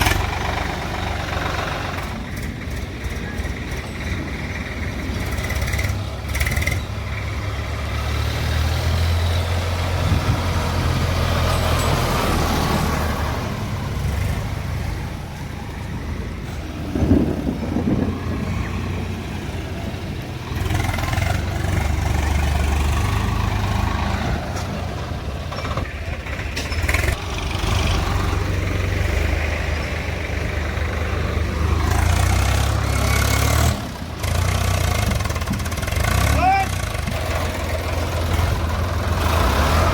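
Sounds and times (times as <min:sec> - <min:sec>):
diesel engine running: 0:00.0 - 0:39.9
metal clanks: 0:24.5 - 0:27.2.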